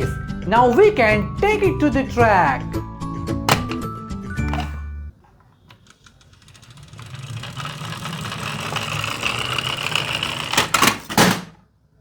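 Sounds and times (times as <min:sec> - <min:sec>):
toy car wheels clicking rattle: 0:05.8 - 0:10.7.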